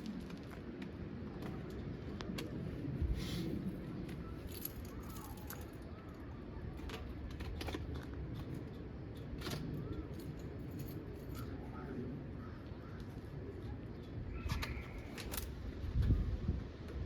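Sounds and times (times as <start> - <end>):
light clicks and rustles: 3.5 - 12.0, 12.9 - 17.0.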